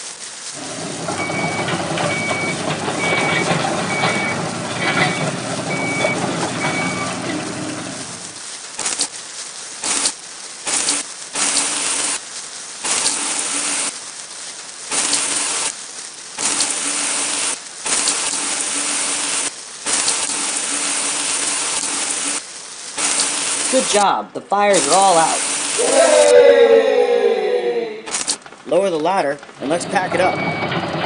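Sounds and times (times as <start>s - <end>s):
fire hose spraying water: 0.0s - 31.0s.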